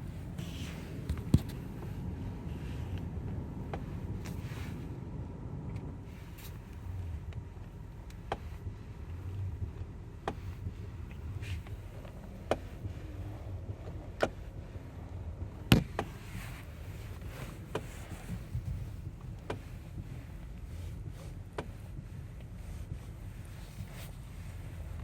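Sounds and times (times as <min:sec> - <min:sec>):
low car rumble: 0:00.0 - 0:25.0
steering wheel knocking: 0:03.0 - 0:04.4, 0:07.2 - 0:23.3.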